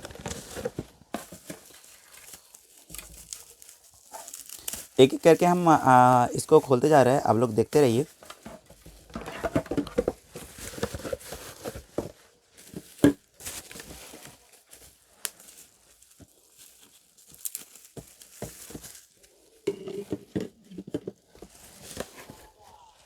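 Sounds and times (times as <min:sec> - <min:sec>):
wrapping crinkling and tearing: 0:00.0 - 0:08.4, 0:10.2 - 0:19.6.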